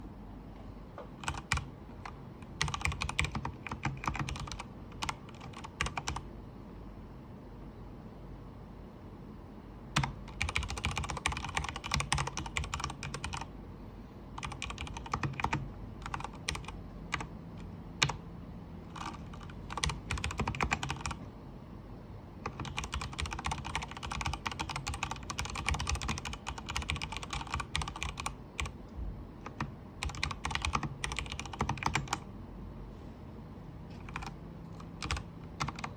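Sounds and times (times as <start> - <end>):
mechanical keyboard typing: 1.2 - 6.3, 10.0 - 13.5, 14.4 - 18.2, 18.9 - 21.2, 22.4 - 28.8, 29.4 - 32.2, 33.9 - 35.9.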